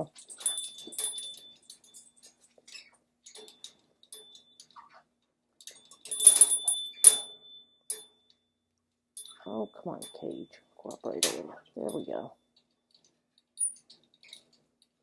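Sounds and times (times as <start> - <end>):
birdcage clicking and rattling: 0.1 - 4.9, 5.6 - 8.1, 12.5 - 15.0.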